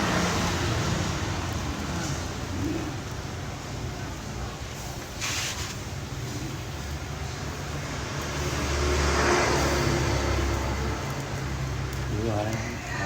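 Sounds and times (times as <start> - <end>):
vehicle engine rumble: 0.0 - 13.0
short hiss: 4.8 - 5.9.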